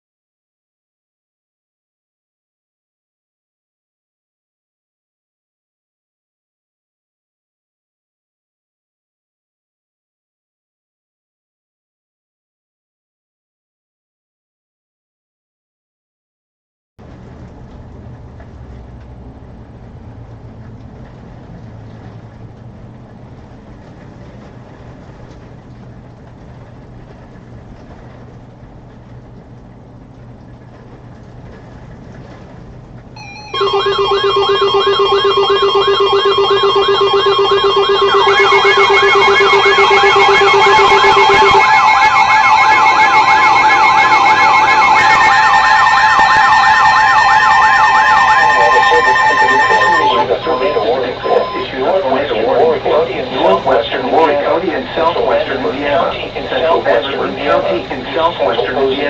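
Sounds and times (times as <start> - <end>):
warbling siren-like sweeps: 33.2 - 51.9
electronic alarm tones: 33.2 - 53.6.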